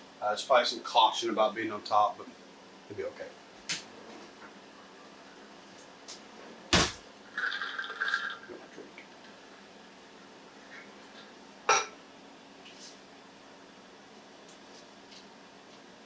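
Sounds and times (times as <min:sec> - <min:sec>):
air fryer humming: 0:04.7 - 0:16.0.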